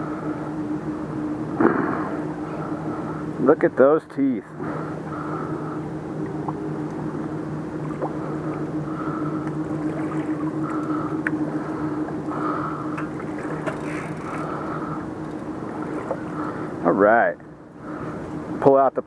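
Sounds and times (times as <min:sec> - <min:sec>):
low mechanical drone: 0:00.0 - 0:19.0
faint higher tone: 0:05.5 - 0:13.6.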